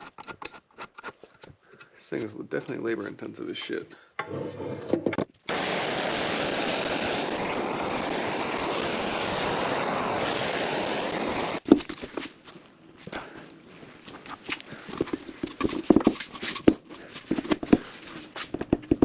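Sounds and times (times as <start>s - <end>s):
parts clicking and knocking: 0.0s - 2.0s, 14.3s - 19.0s
loud steady rushing noise: 5.5s - 11.6s.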